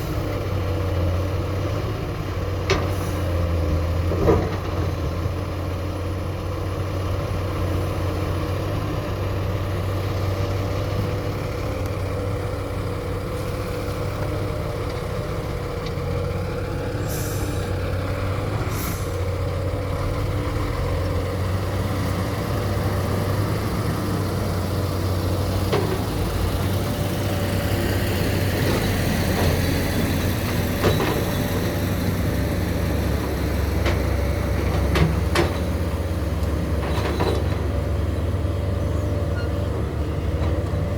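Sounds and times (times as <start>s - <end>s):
excavator diesel engine running: 0.0s - 40.9s
short hisses: 17.0s - 17.7s, 18.7s - 19.2s.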